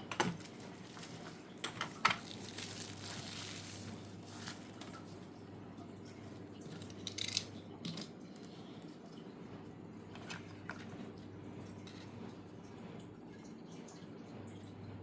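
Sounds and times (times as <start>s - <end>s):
charger and plastic packaging clicks: 6.7s - 8.1s.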